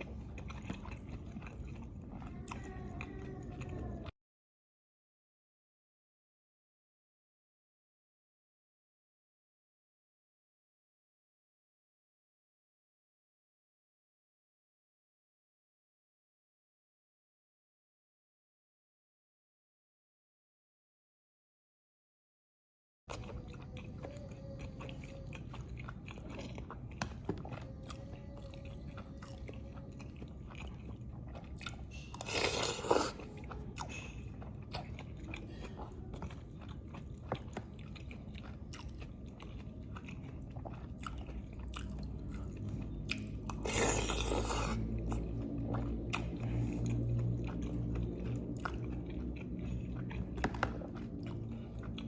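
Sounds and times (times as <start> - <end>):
chewing and biting food: 0.0 - 4.1, 23.1 - 52.0.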